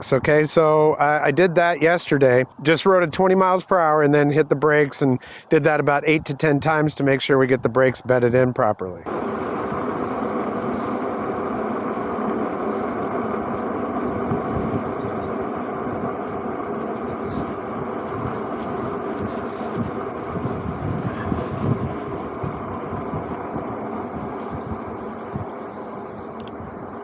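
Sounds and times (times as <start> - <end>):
electric bike tyre noise: 9.1 - 27.0
wind rush: 9.1 - 27.0.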